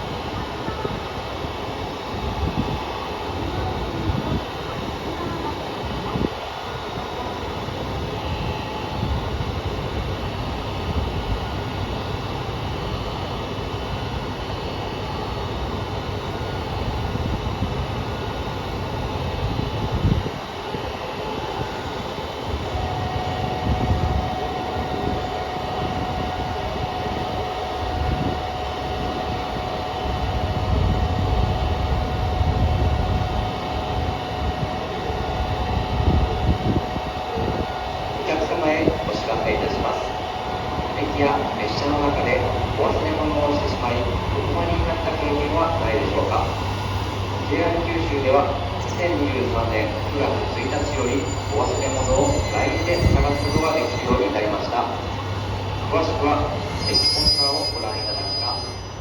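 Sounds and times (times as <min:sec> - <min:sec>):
diesel railcar engine rumbling: 0:00.0 - 0:59.0
steady high tone: 0:36.4 - 0:59.0.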